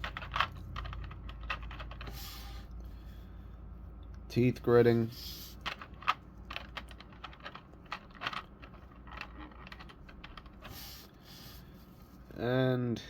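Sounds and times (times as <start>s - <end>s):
plastic parts clicking and tapping: 0.0s - 2.1s, 5.6s - 10.8s.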